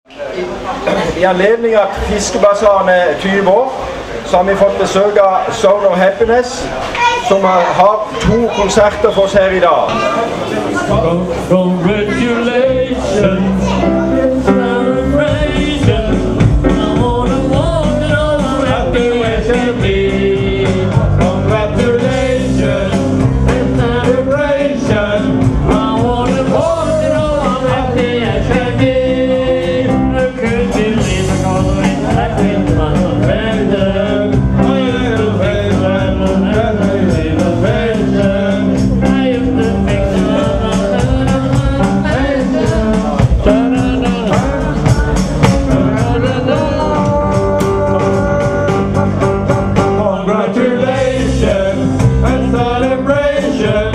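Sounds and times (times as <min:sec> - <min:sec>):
live band playing with steady beat: 0:00.1 - 0:53.9
person singing: 0:10.8 - 0:53.9.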